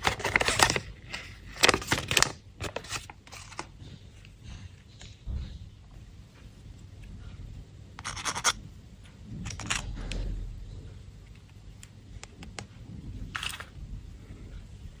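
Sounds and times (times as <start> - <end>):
candy wrapper rustling: 0.0 - 3.8.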